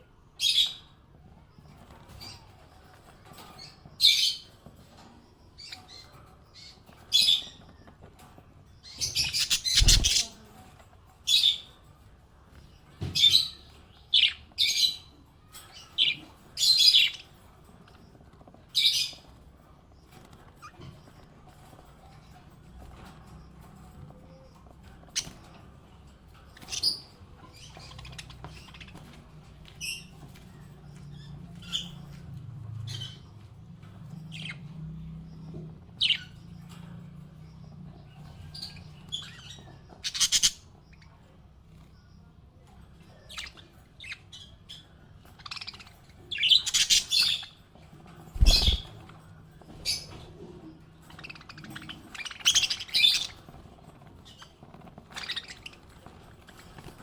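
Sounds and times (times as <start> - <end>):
parrots chirping and squawking: 5.6 - 10.5, 24.6 - 32.3, 38.1 - 41.2, 43.0 - 57.0.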